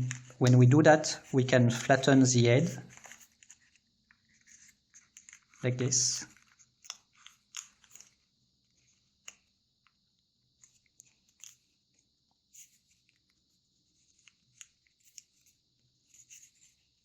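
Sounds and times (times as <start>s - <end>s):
paper crinkling: 0.0s - 2.1s, 2.8s - 8.2s
steady faint hiss: 0.0s - 17.0s.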